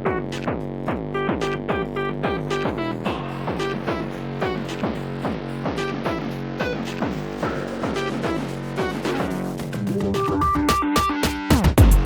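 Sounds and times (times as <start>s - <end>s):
electronic music with sharp notes: 0.0s - 12.0s.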